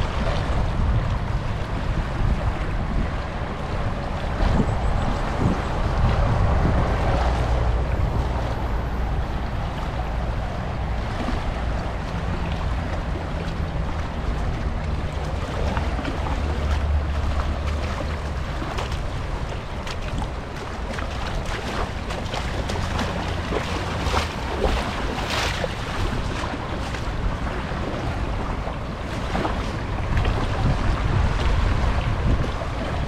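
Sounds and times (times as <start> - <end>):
small waves washing on shore: 0.0 - 33.0
wind buffeting microphone: 0.0 - 33.0.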